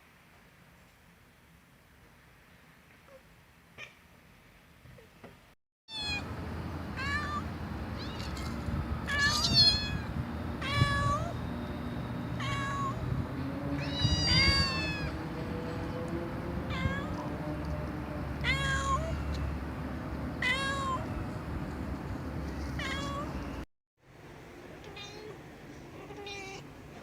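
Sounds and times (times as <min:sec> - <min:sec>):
cat meowing: 0:05.9 - 0:06.2, 0:07.0 - 0:08.5, 0:09.1 - 0:11.4, 0:12.4 - 0:13.0, 0:13.8 - 0:15.2, 0:16.7 - 0:17.2, 0:18.4 - 0:19.2, 0:20.4 - 0:21.1, 0:22.8 - 0:23.3, 0:24.8 - 0:26.6.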